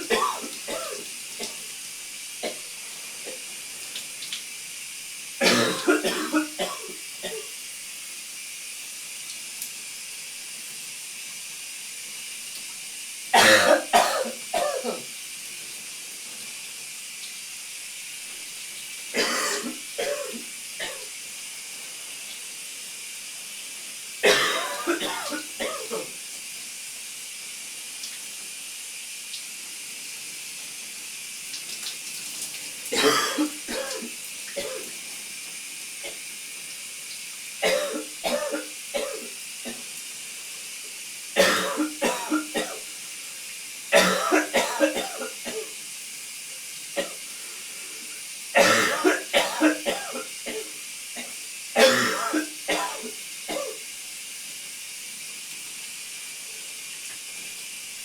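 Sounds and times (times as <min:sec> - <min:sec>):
man coughing: 0:00.0 - 0:01.0, 0:05.4 - 0:06.9, 0:13.4 - 0:15.0, 0:19.2 - 0:21.0, 0:24.2 - 0:26.0, 0:33.0 - 0:34.0, 0:37.6 - 0:39.2, 0:41.4 - 0:42.8, 0:44.0 - 0:45.6, 0:48.6 - 0:50.6, 0:51.8 - 0:53.8
shower running: 0:00.0 - 0:58.0.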